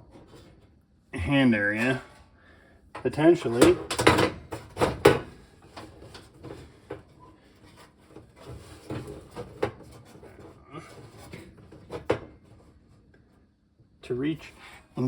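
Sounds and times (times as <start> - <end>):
knocks and rattles of sheet metal: 3.0 - 6.6.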